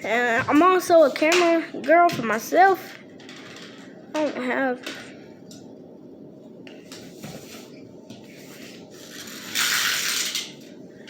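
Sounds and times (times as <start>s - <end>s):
toy cars rolling rumble: 9.0s - 10.6s.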